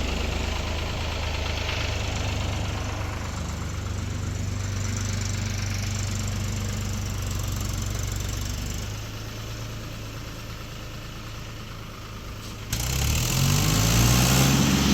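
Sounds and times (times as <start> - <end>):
loud engine rising in pitch: 0.0 - 6.6, 12.7 - 14.9
engine idling: 0.0 - 14.9.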